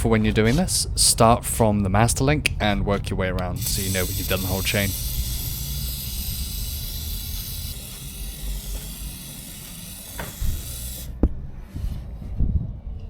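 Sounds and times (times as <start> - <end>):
aerosol spray hissing: 3.5 - 11.2.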